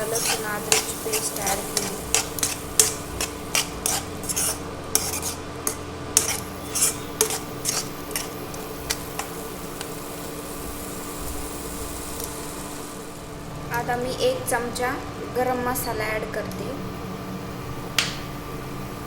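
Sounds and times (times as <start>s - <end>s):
spoon scraping and knocking a pan: 0.0s - 9.4s.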